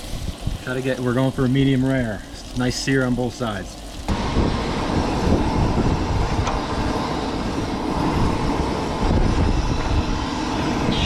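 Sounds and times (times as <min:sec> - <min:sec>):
wind buffeting microphone: 0:00.0 - 0:01.5, 0:04.0 - 0:11.0.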